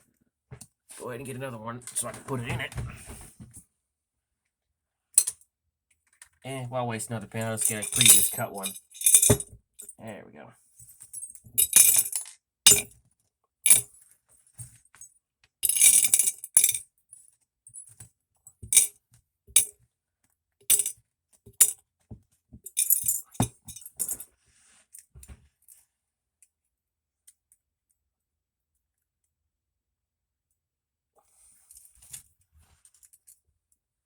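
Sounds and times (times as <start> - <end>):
jangling rattles: 7.5 - 9.9
small metal parts clinking: 7.6 - 9.9, 11.2 - 12.9, 13.7 - 13.9, 15.6 - 16.8, 18.6 - 18.9, 20.7 - 20.9, 22.7 - 24.2.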